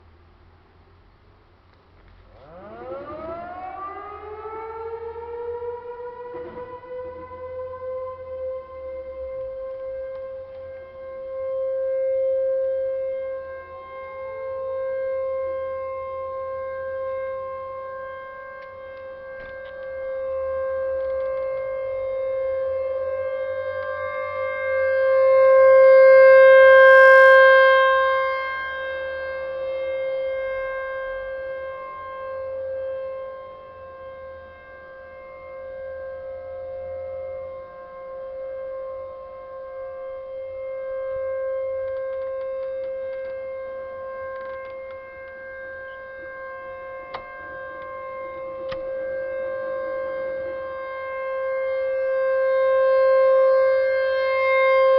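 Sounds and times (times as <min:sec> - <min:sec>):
outdoor warning siren steady tone: 0:01.1 - 0:54.9.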